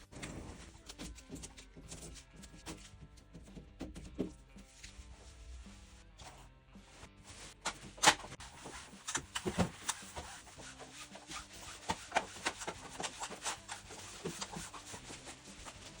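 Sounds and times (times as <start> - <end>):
rubbing and scraping strokes: 4.6 - 7.6, 8.4 - 16.0.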